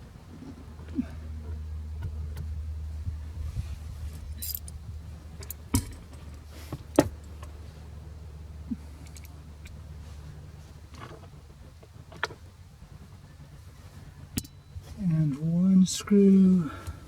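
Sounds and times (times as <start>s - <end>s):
steady low hum: 0.0s - 17.0s
metal parts and tools clinking: 4.2s - 4.8s.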